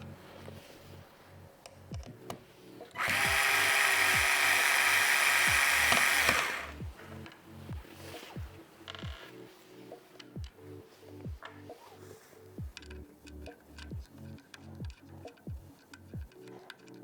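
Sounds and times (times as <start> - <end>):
handheld electric tool whirring: 3.0 - 6.9
music with deep bass beat: 6.7 - 16.7.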